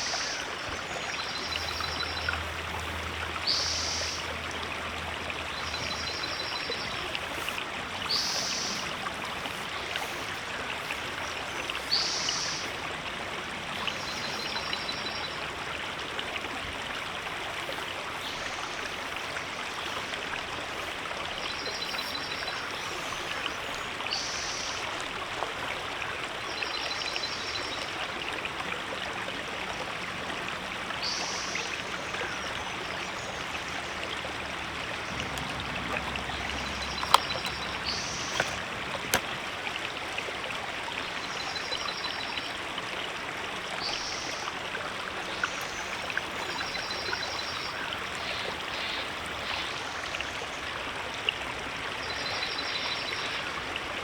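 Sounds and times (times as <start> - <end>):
river flowing over rocks: 0.0 - 54.0
sharp clicks: 36.9 - 37.6, 38.2 - 39.3.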